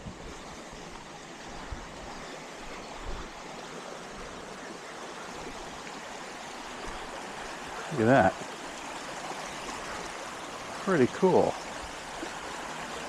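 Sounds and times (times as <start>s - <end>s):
creek flowing: 0.0s - 13.0s.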